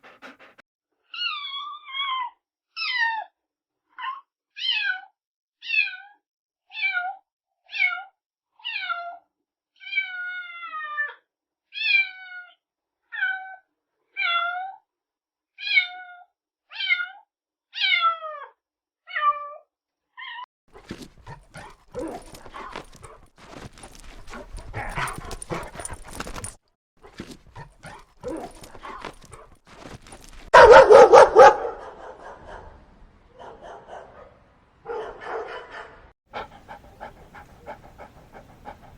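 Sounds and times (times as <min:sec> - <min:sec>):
dog panting and snuffling: 0:00.0 - 0:00.6, 0:20.7 - 0:30.8, 0:36.3 - 0:38.9
dog bark-like burst: 0:30.6 - 0:32.8.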